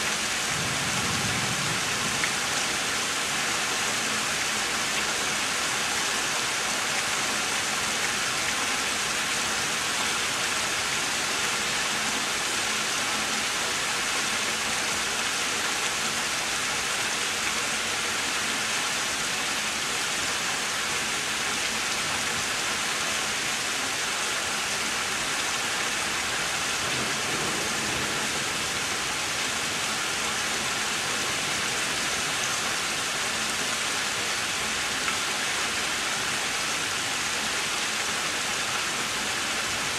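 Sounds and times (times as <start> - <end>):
heavy rain hissing: 0.0 - 39.9.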